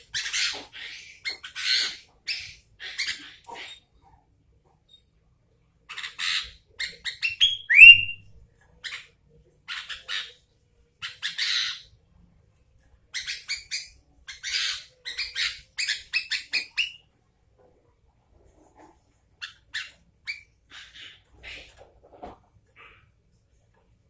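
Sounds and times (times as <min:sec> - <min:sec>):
bird harsh chattering calls: 0:07.3 - 0:08.2.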